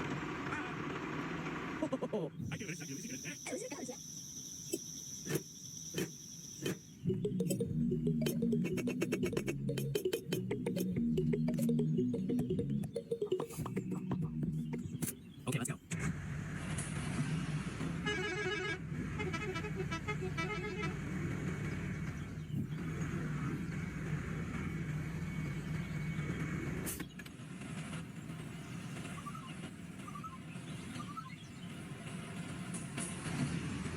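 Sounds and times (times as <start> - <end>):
rapid beeping tones: 7.0 - 15.3.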